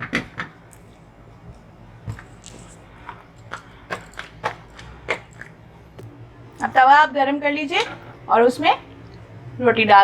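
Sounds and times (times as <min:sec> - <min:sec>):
kitchen utensils clicking: 0:03.0 - 0:05.6.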